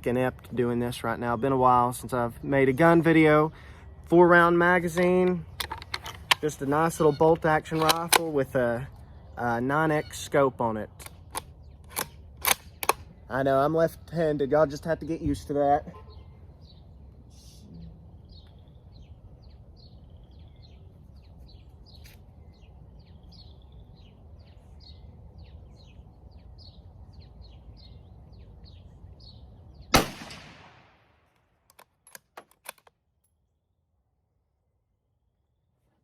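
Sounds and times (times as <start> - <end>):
low background noise: 0.0 - 32.9
bird chirping: 6.4 - 30.2
rifle shot: 29.9 - 31.1.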